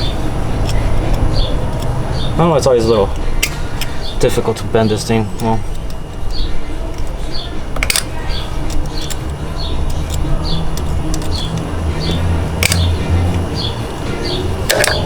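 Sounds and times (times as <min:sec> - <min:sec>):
pliers metallic clicks: 0:00.6 - 0:02.0, 0:02.9 - 0:04.4, 0:05.1 - 0:13.4.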